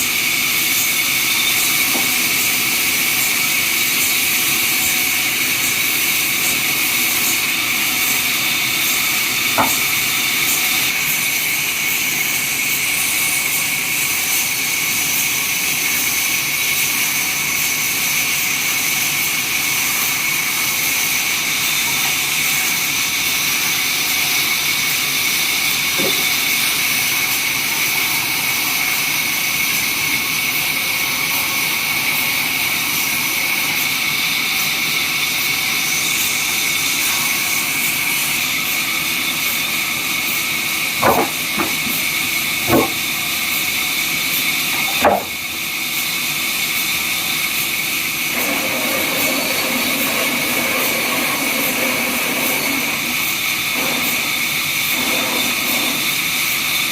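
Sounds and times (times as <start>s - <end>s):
sawmill saw whining: 0.0s - 56.9s
sharp knocks: 9.6s - 10.0s, 26.0s - 26.3s, 41.0s - 42.0s, 42.6s - 43.1s, 44.8s - 45.4s.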